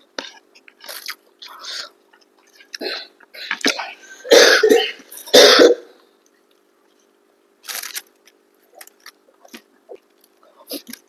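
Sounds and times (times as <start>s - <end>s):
woman coughing: 4.3s - 5.9s.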